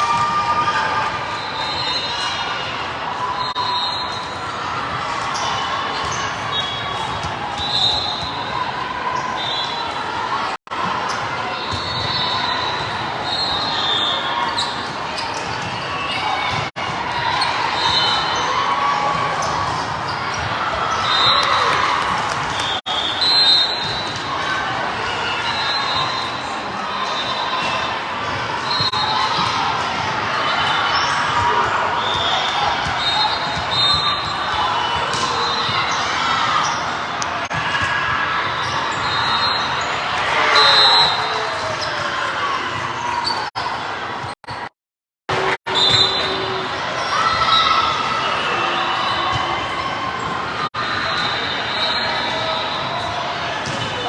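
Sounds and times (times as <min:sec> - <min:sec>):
crowd chatter: 0:00.0 - 0:44.7, 0:45.3 - 0:54.0
spectators' voices: 0:00.0 - 0:44.7
shoes squeaking on court: 0:19.4 - 0:23.2.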